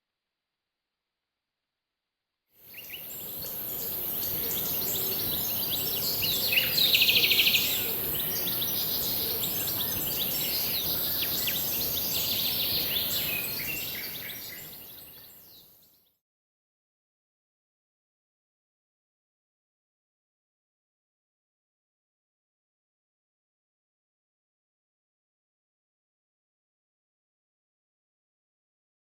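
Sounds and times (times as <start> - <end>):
birds singing and chirping: 2.7 - 15.7.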